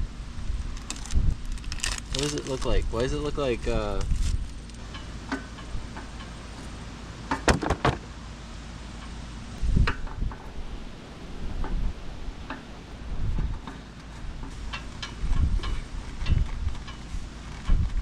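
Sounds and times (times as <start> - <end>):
knocks and clatter of tools: 7.3 - 8.0.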